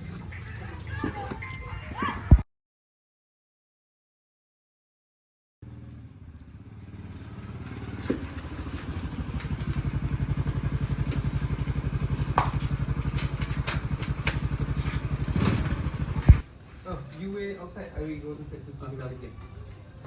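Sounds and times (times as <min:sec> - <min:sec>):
vehicle engine idling: 0:05.6 - 0:16.5.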